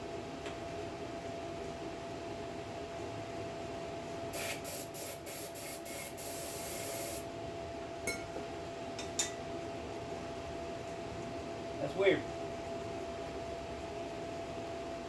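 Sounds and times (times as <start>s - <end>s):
steady hum: 4.3s - 7.4s
hissing sprays from a nozzle: 4.4s - 7.2s.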